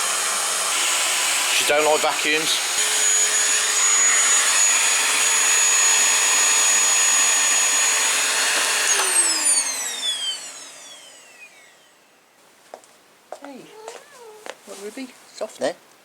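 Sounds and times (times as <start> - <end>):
vacuum cleaner whining: 0.0 - 12.4.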